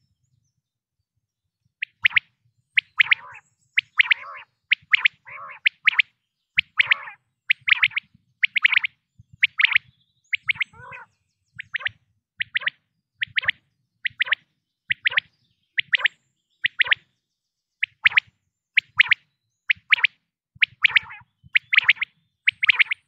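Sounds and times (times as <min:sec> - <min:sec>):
low burbling bird calls: 0:02.8 - 0:12.7, 0:20.7 - 0:23.0
quail calling: 0:02.8 - 0:17.0, 0:18.8 - 0:23.0.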